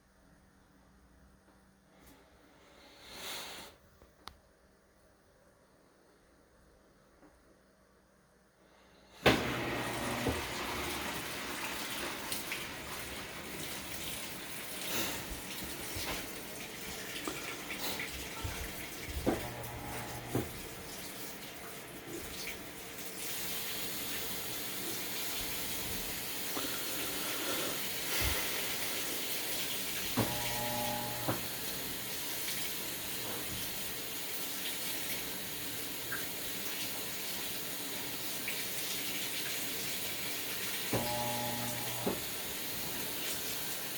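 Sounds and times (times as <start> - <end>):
water rushing through washing machine: 9.2 - 43.9.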